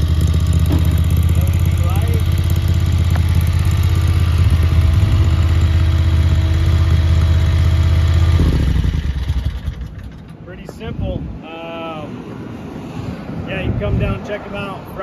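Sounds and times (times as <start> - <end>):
small gasoline engine running: 0.0 - 10.4.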